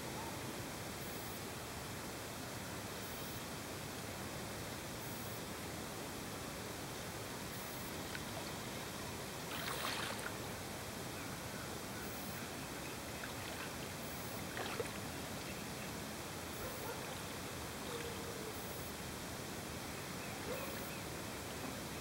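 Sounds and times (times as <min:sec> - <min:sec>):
water ambience hiss: 0:00.0 - 0:22.0
water splash: 0:09.5 - 0:10.4, 0:14.5 - 0:15.0.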